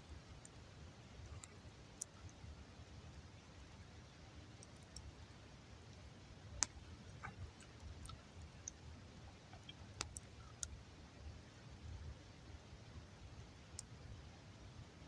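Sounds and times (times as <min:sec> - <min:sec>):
low steady rumble: 0:00.0 - 0:15.0
campfire crackling and popping: 0:09.5 - 0:10.7.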